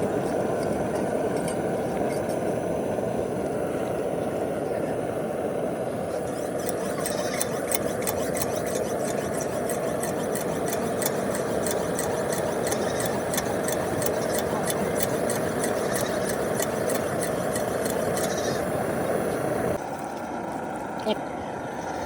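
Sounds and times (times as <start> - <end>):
low rumbling background noise: 0.0 - 22.0.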